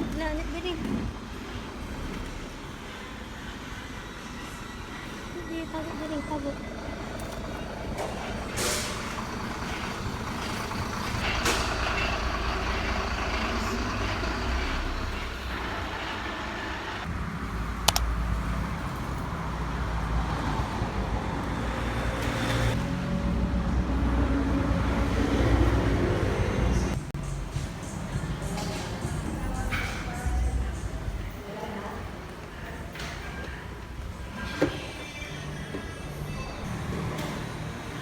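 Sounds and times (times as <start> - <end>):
vehicle engines rumbling: 0.0 - 38.0
sharp click: 17.8 - 18.1.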